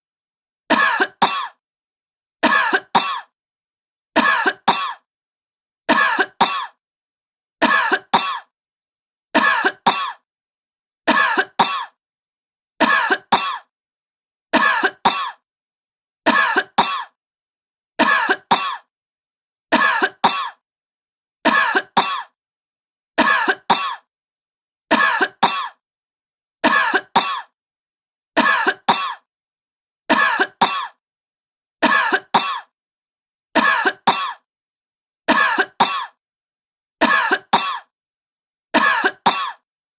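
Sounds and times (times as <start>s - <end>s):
woman coughing: 0.7s - 1.6s, 2.4s - 3.4s, 4.2s - 5.1s, 5.9s - 6.8s, 7.6s - 8.5s, 9.4s - 10.2s, 11.1s - 12.0s, 12.8s - 13.7s, 14.6s - 15.4s, 16.3s - 17.2s, 18.0s - 18.9s, 19.8s - 20.6s, 21.5s - 22.4s, 23.2s - 24.1s, 24.9s - 25.8s, 26.7s - 27.6s, 28.4s - 29.3s, 30.1s - 31.0s, 31.8s - 32.7s, 33.6s - 34.5s, 35.3s - 36.2s, 37.0s - 37.9s, 38.8s - 39.6s.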